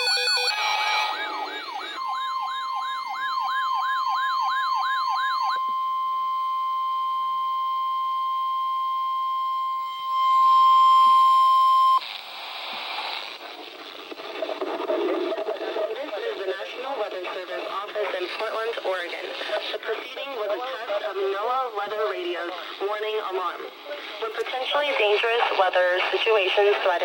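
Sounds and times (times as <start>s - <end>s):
steady warning tone: 0.0s - 12.0s
sweeping alarm sirens: 0.0s - 12.0s.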